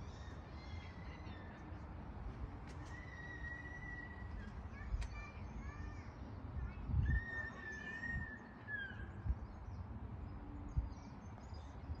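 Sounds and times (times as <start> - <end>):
wind rumble: 6.4 - 8.4.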